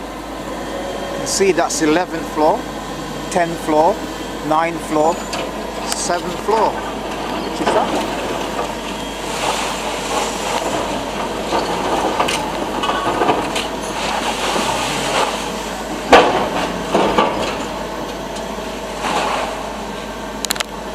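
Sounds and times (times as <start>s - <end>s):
clatter of machinery and debris: 5.0s - 19.7s
knocks of breaking material: 16.1s - 17.6s.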